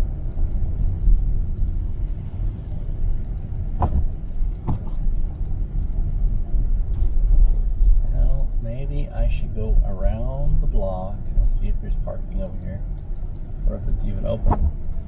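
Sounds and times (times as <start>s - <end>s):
car road and engine noise: 0.0s - 15.0s
short knocks: 3.8s - 5.0s, 14.4s - 14.8s.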